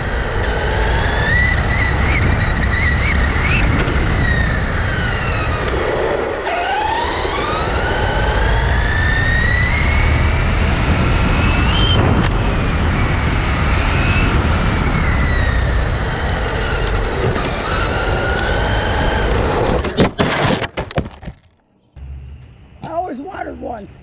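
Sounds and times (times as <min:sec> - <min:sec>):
electric motor whining: 0:00.0 - 0:20.0
road and air noise: 0:00.0 - 0:20.0, 0:21.6 - 0:24.0
toy car tipping over knocks: 0:19.7 - 0:21.6.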